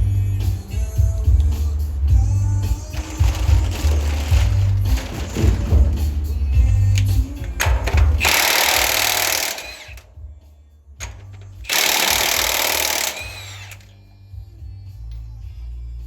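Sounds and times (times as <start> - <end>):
background music: 0.0 - 16.0
pneumatic impact wrench: 2.8 - 6.1, 6.7 - 10.2, 11.0 - 13.9.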